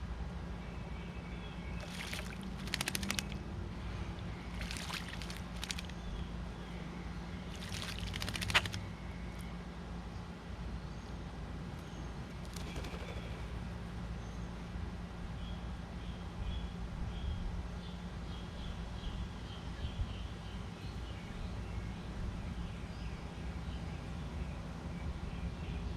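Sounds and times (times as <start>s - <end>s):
steady low hum: 0.0s - 25.9s
bird splashing in water: 1.8s - 6.1s, 7.4s - 9.0s
wings fluttering in water: 1.8s - 6.1s, 7.4s - 9.4s, 12.4s - 13.5s.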